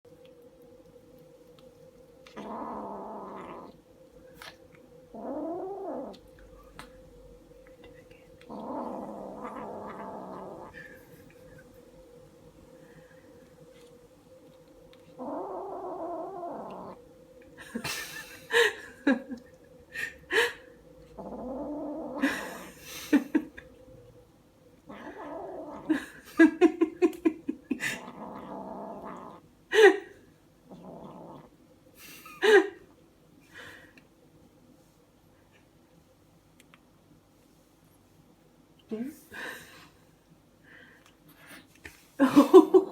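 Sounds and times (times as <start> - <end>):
kitten growling: 2.2 - 12.0, 14.9 - 17.0, 21.0 - 23.6, 24.8 - 31.6, 42.2 - 42.9.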